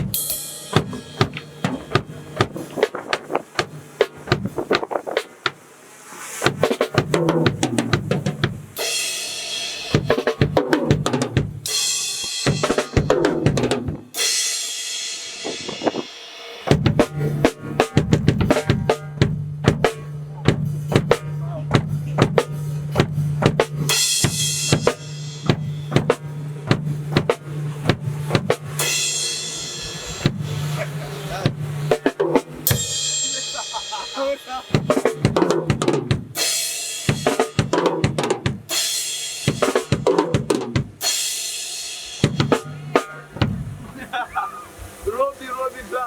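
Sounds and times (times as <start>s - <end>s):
cymbal crashes: 0.0s - 2.7s, 8.8s - 10.6s, 11.6s - 13.2s, 14.1s - 16.9s, 27.8s - 35.4s
drum fills: 0.0s - 46.0s.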